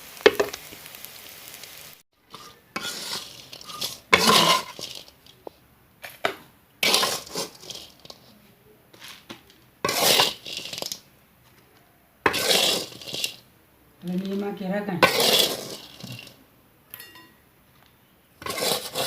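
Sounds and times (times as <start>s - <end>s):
metal utensil scraping a pot: 2.3s - 5.4s, 6.8s - 8.3s, 9.0s - 11.0s, 12.3s - 13.4s, 14.2s - 16.4s, 18.4s - 19.0s.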